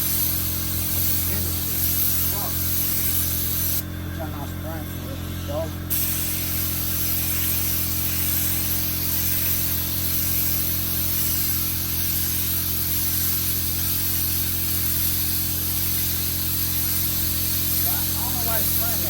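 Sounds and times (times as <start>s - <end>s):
spray gun hissing: 0.0s - 3.8s, 4.4s - 19.0s
low motor hum: 3.4s - 5.9s.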